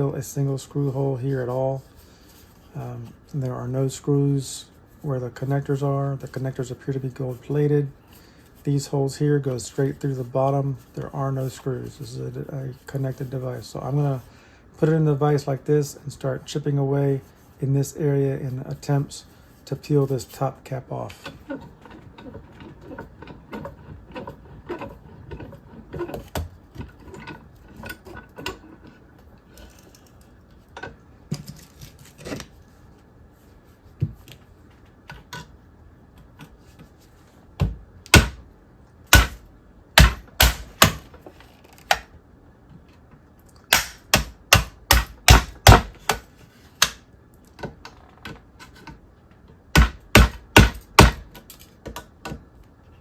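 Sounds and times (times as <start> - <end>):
chisel tapping and scraping plastic: 21.1 - 32.5, 49.8 - 52.4
sharp chisel strikes: 38.1 - 38.4, 39.1 - 39.4, 40.0 - 41.0, 43.7 - 46.2, 49.8 - 51.3.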